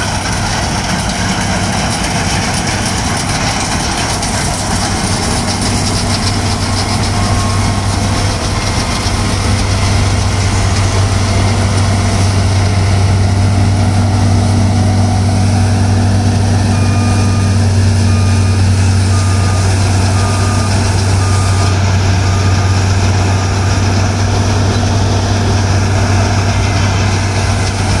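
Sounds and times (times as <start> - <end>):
combine harvester engine hum: 0.0 - 28.0
electronic warning beeper: 2.8 - 12.8, 15.5 - 24.6.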